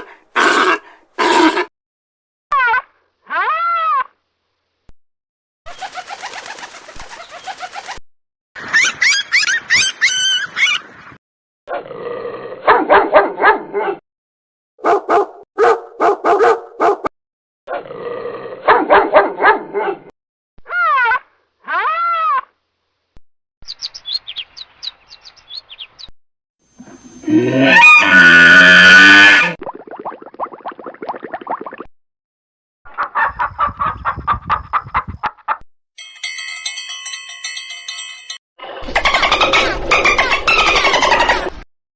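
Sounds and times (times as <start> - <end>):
animal calls and cries: 8.6 - 11.0.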